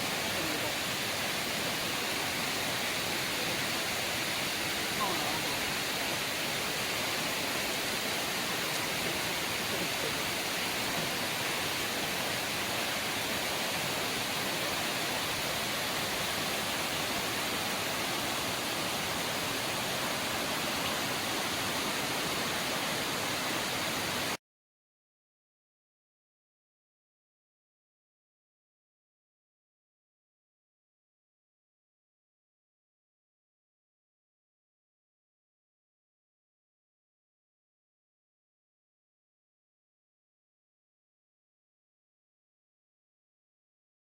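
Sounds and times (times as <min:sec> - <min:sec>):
waterfall rushing and splashing: 0:00.0 - 0:24.4.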